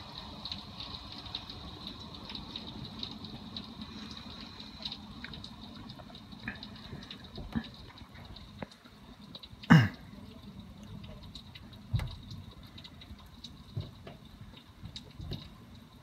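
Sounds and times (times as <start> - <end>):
hailstones ticking on hard surfaces: 0.0 - 16.0
steady rain: 0.0 - 16.0.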